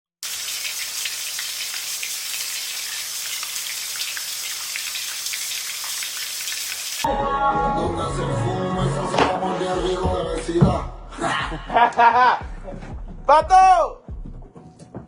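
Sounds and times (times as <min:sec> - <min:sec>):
rain-like hiss with ticks: 0:00.2 - 0:07.1
hip hop music: 0:07.1 - 0:11.6, 0:12.4 - 0:14.4.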